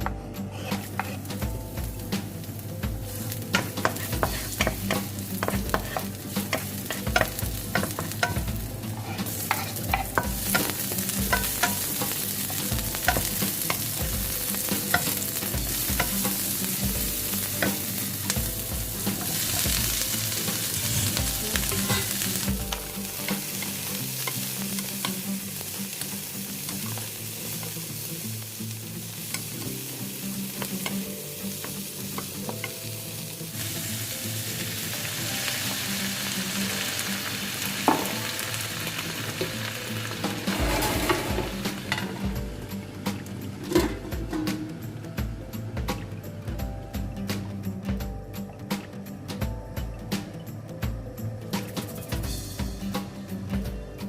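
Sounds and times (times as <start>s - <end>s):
food sizzling in a frying pan: 0.0s - 48.8s
utensil clicking against pan: 3.6s - 17.0s.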